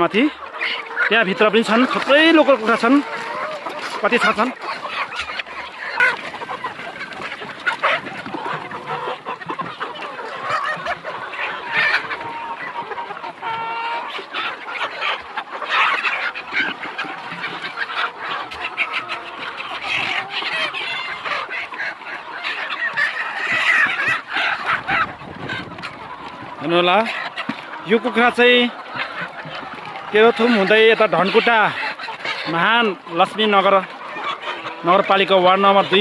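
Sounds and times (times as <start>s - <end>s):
chickens clucking: 0.0s - 36.0s.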